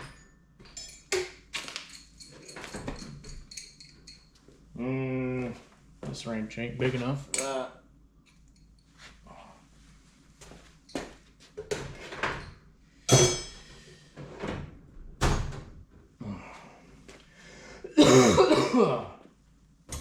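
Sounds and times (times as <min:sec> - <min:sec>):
metal hand tools knocking and clanking: 0:13.1 - 0:13.6.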